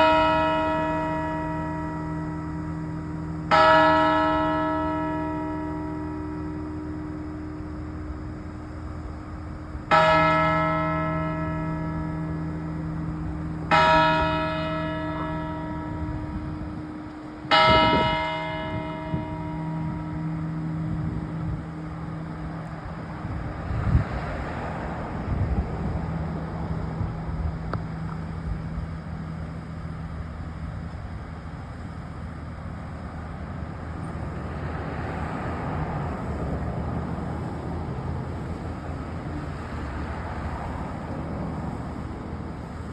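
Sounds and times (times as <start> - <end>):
church bell ringing: 0.0 - 23.4, 24.6 - 32.6.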